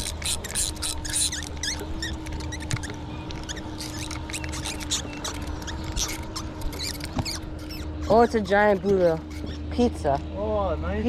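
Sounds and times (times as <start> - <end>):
fishing reel cranking clicks: 0.0 - 7.7
steady low hum: 0.0 - 11.0.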